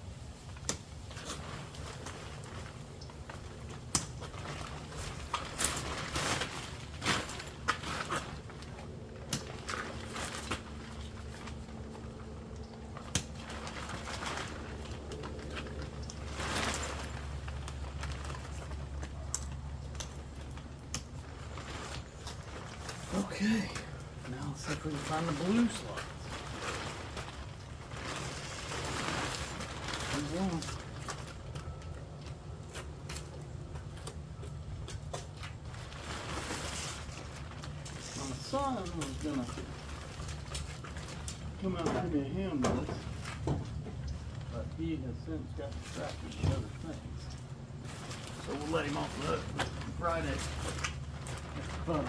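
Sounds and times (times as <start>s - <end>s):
tent fabric rustling: 1.0s - 19.0s, 21.1s - 31.5s, 35.6s - 41.8s, 45.7s - 52.0s.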